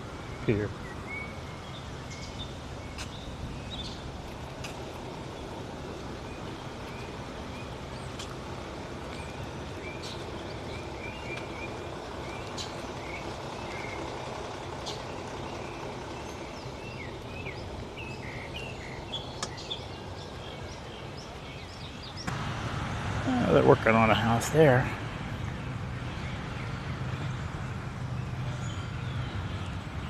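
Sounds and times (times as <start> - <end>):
vehicle engine rumble: 0.0 - 30.0
bird chirps: 0.1 - 4.1, 9.0 - 22.3.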